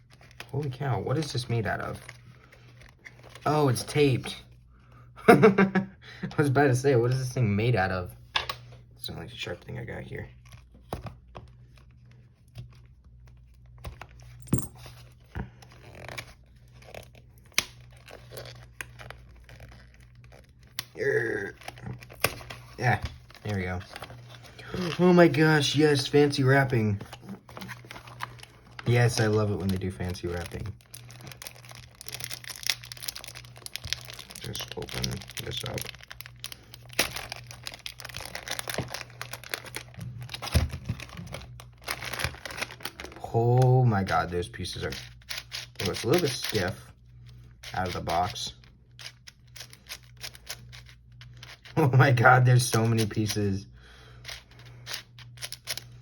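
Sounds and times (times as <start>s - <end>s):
plastic wrapping crinkling and tearing: 0.0s - 4.4s, 15.0s - 53.4s.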